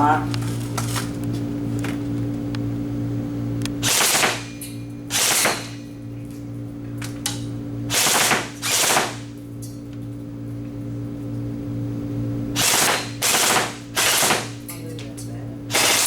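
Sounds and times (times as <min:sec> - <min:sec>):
steady low hum: 0:00.0 - 0:16.0
airsoft rifle firing bursts: 0:07.9 - 0:09.3, 0:12.6 - 0:14.6, 0:15.7 - 0:16.0.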